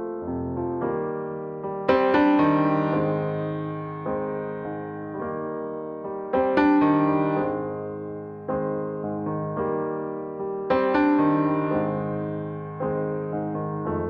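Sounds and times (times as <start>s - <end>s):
slow piano chords: 0.0s - 14.0s.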